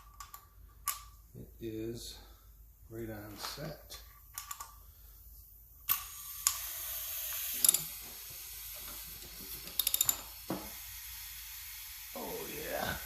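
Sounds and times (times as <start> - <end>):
compressed air hissing: 6.0 - 13.0
ratchet-like clicks: 7.3 - 7.9, 9.7 - 10.3.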